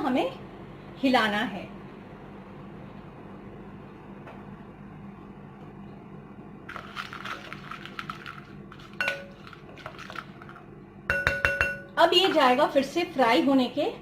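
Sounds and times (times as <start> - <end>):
low steady hum: 0.0 - 14.0
spoon clinking against bowl: 9.0 - 9.5, 11.1 - 12.0.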